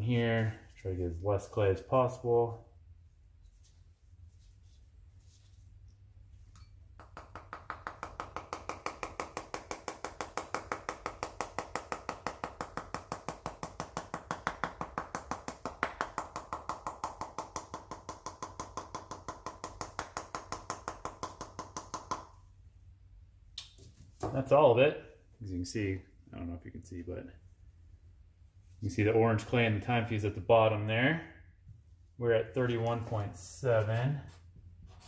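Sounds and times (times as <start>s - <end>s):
rapid tapping on firework shell: 6.6s - 22.4s.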